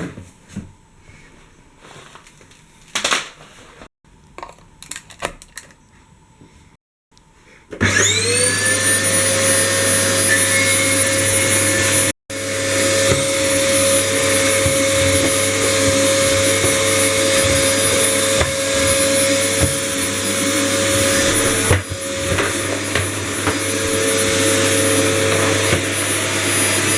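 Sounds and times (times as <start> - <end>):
vacuum cleaner running: 7.8 - 26.9.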